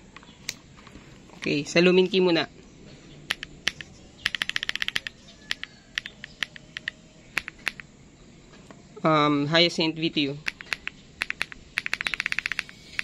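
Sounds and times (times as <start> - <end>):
mechanical keyboard keystrokes: 3.3 - 7.8, 10.4 - 13.0.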